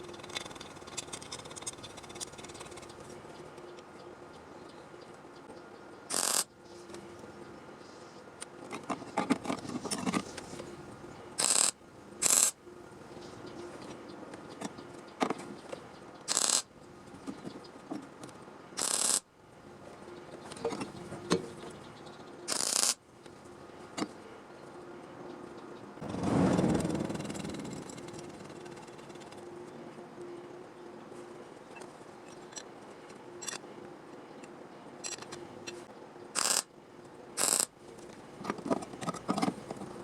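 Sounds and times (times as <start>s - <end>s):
short hissing bursts: 6.1s - 6.4s, 11.4s - 12.6s, 16.3s - 16.6s, 18.8s - 19.2s, 22.5s - 23.0s.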